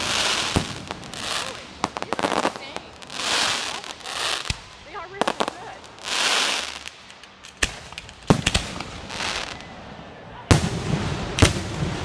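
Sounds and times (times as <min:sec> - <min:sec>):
firework shells bursting: 0:00.0 - 0:09.6
firework hissing crackle: 0:00.0 - 0:12.0.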